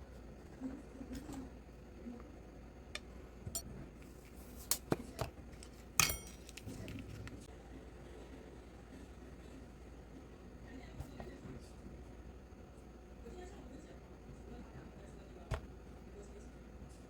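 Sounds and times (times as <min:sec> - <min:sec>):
sharp ringing metallic clink: 0:06.0 - 0:06.5
small metal parts clicking and clinking: 0:06.0 - 0:07.1.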